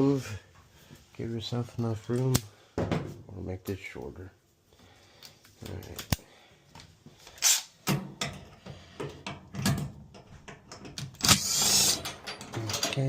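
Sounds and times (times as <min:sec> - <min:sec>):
tools clicking and scraping on metal: 0:07.4 - 0:13.0.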